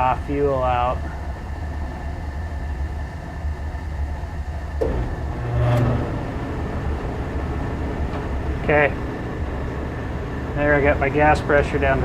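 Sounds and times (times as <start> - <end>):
gas burners rumbling: 0.0 - 12.0
short pitched hum: 4.8 - 10.5.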